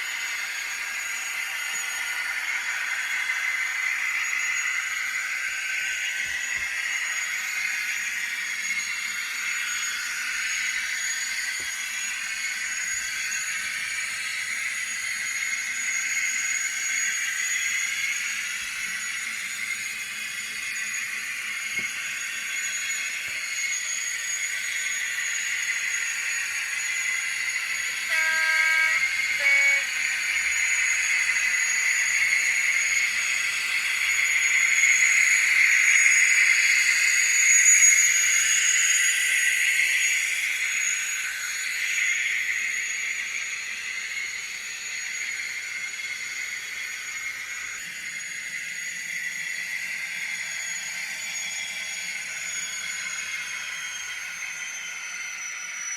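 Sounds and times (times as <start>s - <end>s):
model locomotive engine sound: 0.0s - 55.9s
high whine: 27.8s - 30.3s
two-note locomotive horn: 27.8s - 30.7s.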